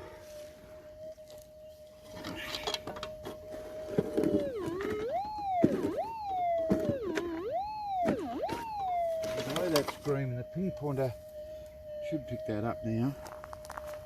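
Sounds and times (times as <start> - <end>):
metal detector hum: 0.0 - 14.0
metal detector tone warbling: 1.0 - 11.2.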